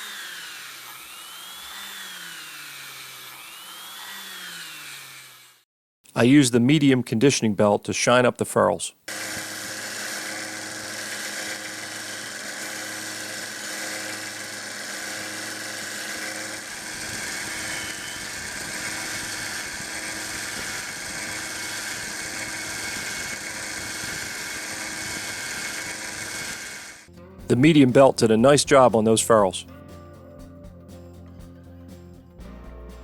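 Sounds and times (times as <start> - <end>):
belt sander motor hum: 0.0 - 5.6, 9.1 - 27.1.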